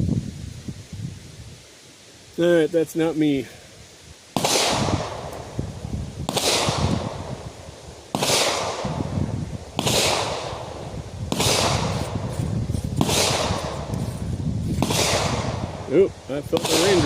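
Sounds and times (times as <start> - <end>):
rifle shots with rolling echo: 4.4 - 5.6, 6.2 - 7.5, 8.1 - 9.1, 9.7 - 12.2, 13.0 - 13.9, 14.8 - 17.0.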